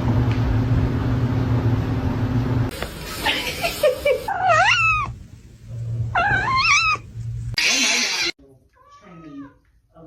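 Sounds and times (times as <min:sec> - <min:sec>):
cat yowling: 0:04.3 - 0:05.2, 0:06.1 - 0:09.6.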